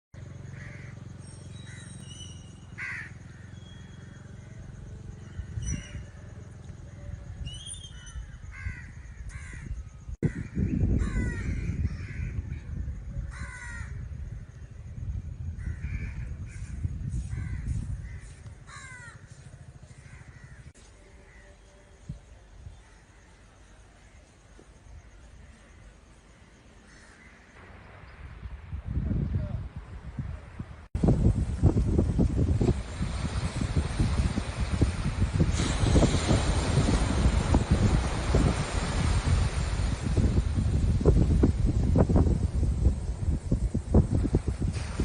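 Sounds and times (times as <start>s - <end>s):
crows cawing: 0.5s - 1.0s, 2.8s - 3.6s, 8.1s - 12.4s, 13.3s - 14.0s, 17.3s - 21.5s, 26.9s - 27.6s.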